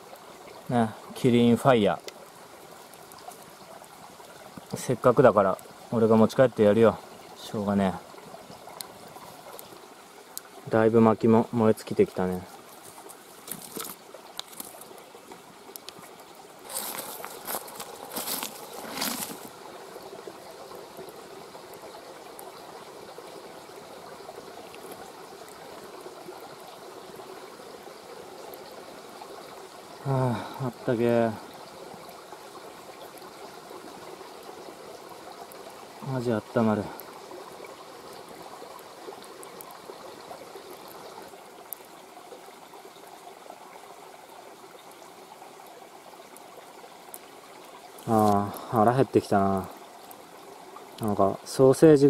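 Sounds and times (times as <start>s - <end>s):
campfire crackling: 0.0s - 52.0s
river flowing: 0.0s - 52.0s.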